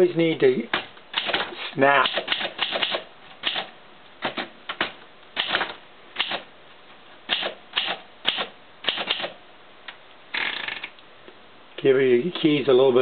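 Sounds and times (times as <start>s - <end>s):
typewriter keystroke clacks: 0.7s - 6.4s, 7.3s - 9.4s.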